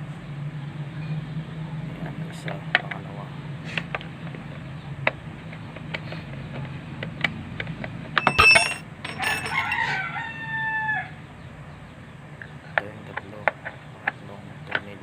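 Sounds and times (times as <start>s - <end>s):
rooster crowing: 9.2s - 11.3s.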